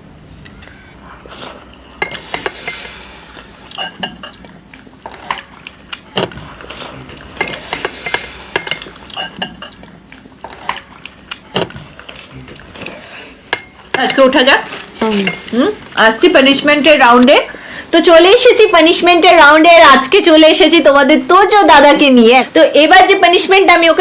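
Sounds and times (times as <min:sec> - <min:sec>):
cutlery clinking on dishes: 0:03.7 - 0:04.4, 0:07.4 - 0:09.8, 0:15.1 - 0:15.6.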